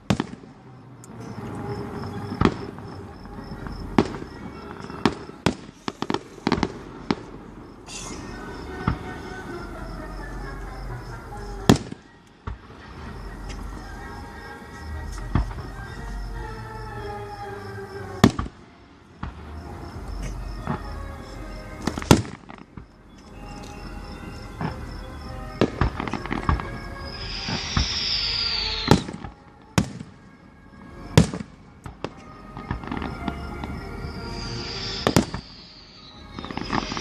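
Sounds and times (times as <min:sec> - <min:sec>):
fireworks booming: 0:00.0 - 0:30.3, 0:31.0 - 0:37.0
fireworks crackling and hissing: 0:00.0 - 0:37.0
falling whistle: 0:07.9 - 0:11.1, 0:23.1 - 0:29.8, 0:32.0 - 0:37.0.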